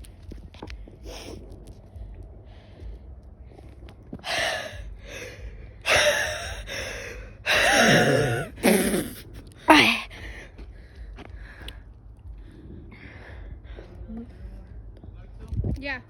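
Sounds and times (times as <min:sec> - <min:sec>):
person gasping and squealing: 0:04.2 - 0:10.5.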